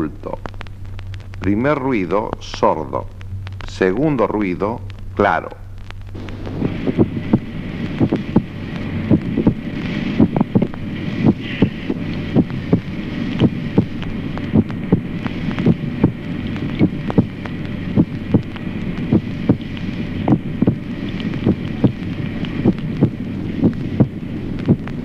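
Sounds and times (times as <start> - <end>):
steady hiss: 0.0 - 25.0
heartbeat through stethoscope: 5.7 - 25.0.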